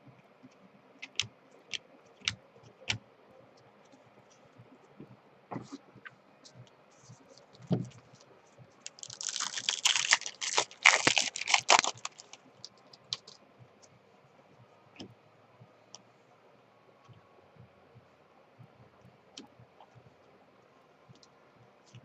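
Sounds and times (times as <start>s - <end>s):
wrapper crinkling and tearing: 8.9s - 12.4s.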